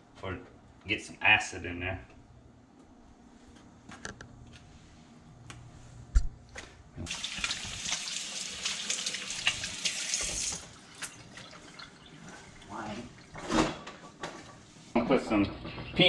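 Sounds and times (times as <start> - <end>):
faucet running into sink: 7.1 - 13.2.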